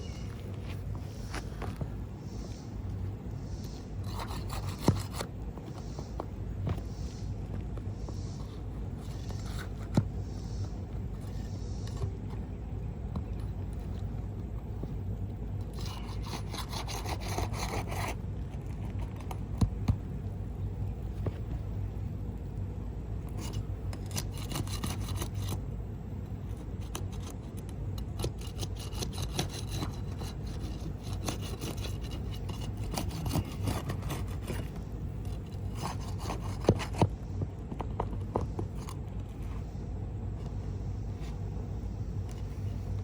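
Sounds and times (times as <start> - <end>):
steady low hum: 0.0 - 43.0
scraping on roof shingles: 28.2 - 39.4.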